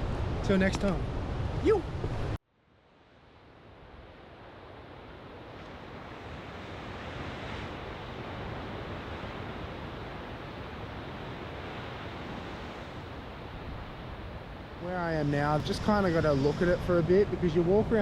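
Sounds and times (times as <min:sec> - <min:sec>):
ocean surf washing on rocks: 0:04.4 - 0:18.0.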